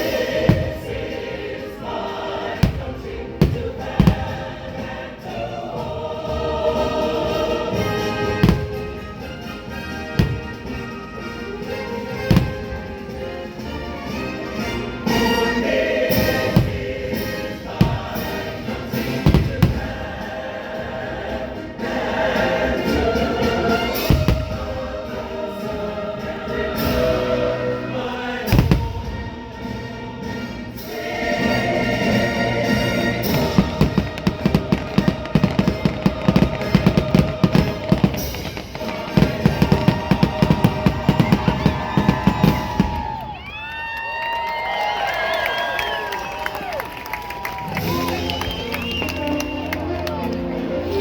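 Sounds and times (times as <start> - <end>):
firework bangs: 0.0 - 5.0, 7.7 - 13.7, 15.1 - 20.2, 23.4 - 25.4, 28.5 - 29.4, 32.7 - 43.6
choir singing with orchestra: 0.0 - 43.4, 49.8 - 51.0
soundtrack music with drums: 0.0 - 43.5, 47.6 - 51.0.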